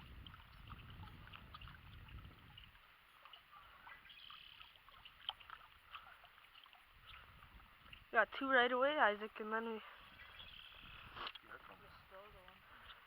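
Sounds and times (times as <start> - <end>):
moving water: 0.0 - 13.0
short bird chirps: 3.9 - 4.6, 10.0 - 11.1.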